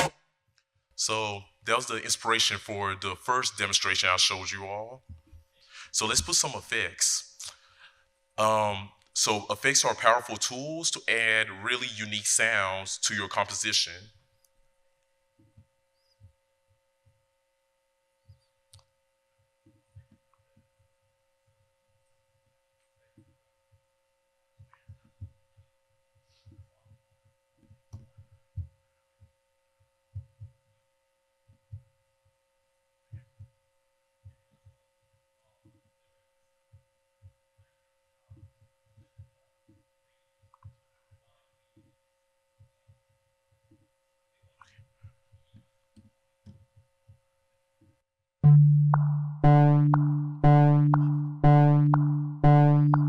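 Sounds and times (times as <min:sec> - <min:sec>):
muffled low thumps: 0:48.4 - 0:53.0.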